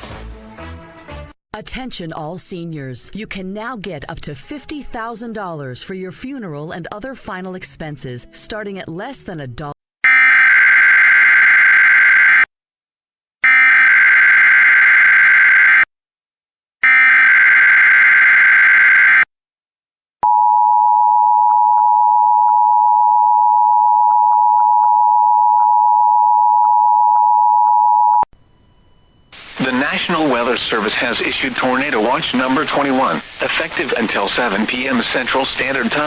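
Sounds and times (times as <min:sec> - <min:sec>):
steady attention signal tone: 0:20.2 - 0:30.3.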